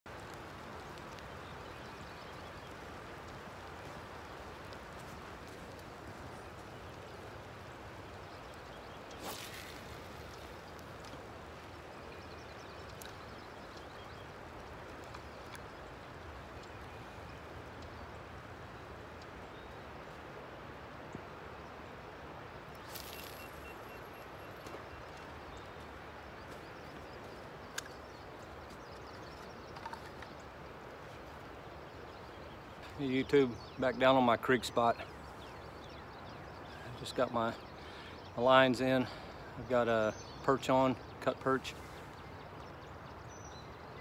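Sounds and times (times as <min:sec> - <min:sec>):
creek rushing hiss: 0:00.1 - 0:16.6.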